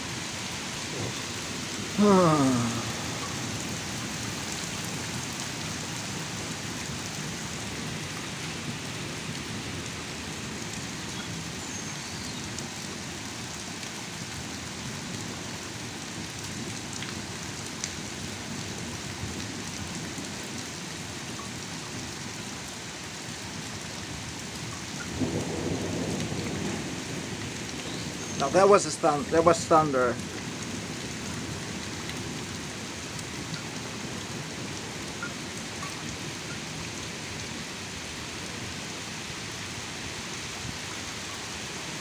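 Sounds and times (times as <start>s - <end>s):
heavy rain splashing on ground: 0.0s - 42.0s.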